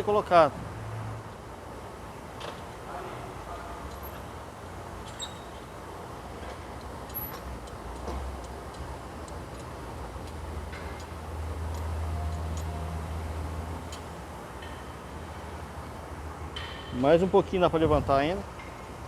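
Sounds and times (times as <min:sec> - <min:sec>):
light clicks of car jack: 0:06.4 - 0:12.8.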